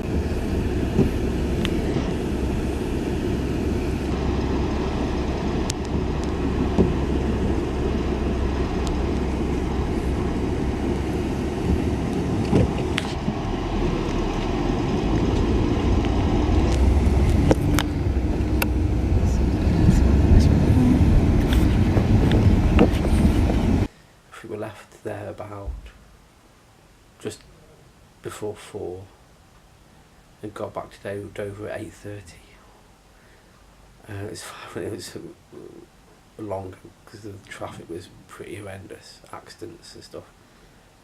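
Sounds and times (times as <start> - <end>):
vehicle rumble inside cabin: 0.0 - 23.9.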